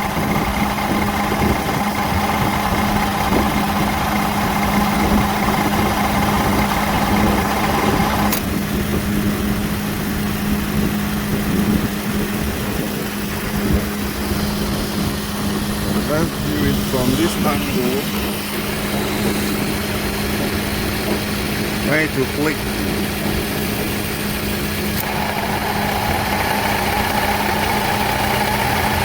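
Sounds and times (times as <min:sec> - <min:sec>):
car engine idling: 0:00.0 - 0:29.0
compressor rattling: 0:00.0 - 0:29.0
steady whine: 0:00.0 - 0:29.0
compressor clutch click: 0:01.0 - 0:08.6, 0:24.8 - 0:29.0.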